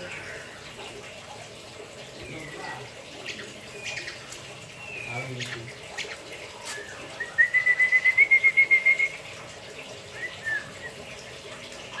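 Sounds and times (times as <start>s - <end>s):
bird whistling song: 3.4s - 9.3s, 10.1s - 11.1s.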